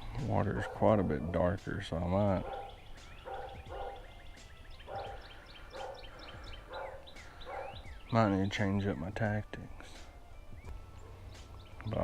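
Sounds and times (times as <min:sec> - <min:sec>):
small birds chirping faintly: 0:00.0 - 0:12.0
animal calling: 0:02.2 - 0:08.6.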